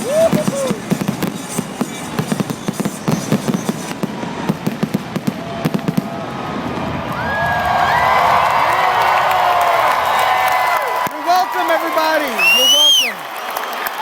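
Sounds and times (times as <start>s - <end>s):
crowd cheering: 0.0s - 1.0s, 5.2s - 14.0s
fireworks bangs and crackles: 0.0s - 13.2s.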